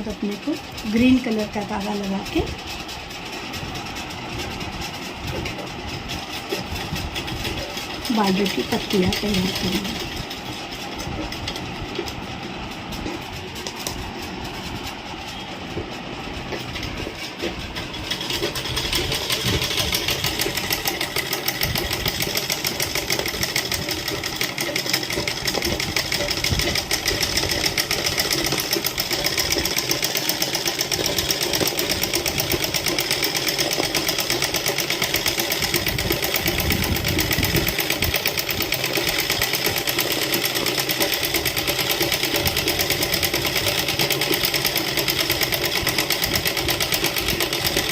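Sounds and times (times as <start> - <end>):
sewing machine stitching: 0.0 - 47.9.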